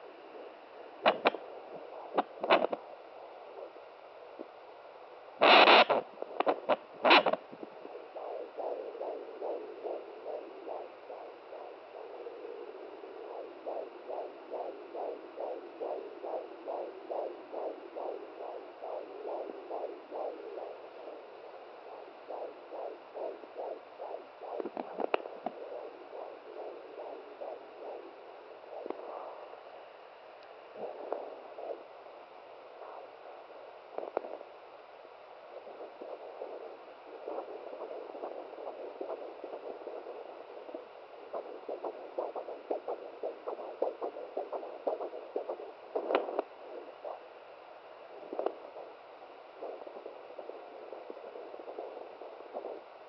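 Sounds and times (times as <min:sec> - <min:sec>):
whooshing heartbeat pulse: 0:06.5 - 0:29.5, 0:30.7 - 0:31.9, 0:35.5 - 0:47.2, 0:48.1 - 0:52.9.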